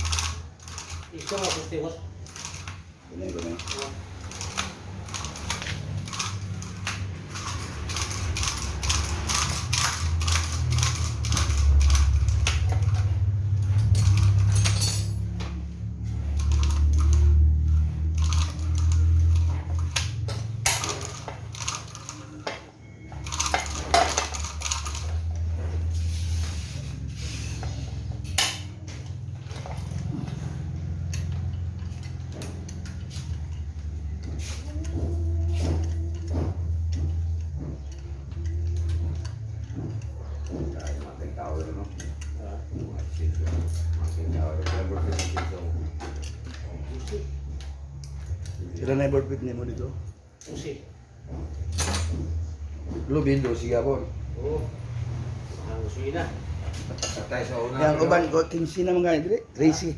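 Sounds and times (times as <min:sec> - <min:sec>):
metal tools clinking: 0:00.0 - 0:17.2, 0:18.2 - 0:50.7, 0:56.7 - 0:59.9.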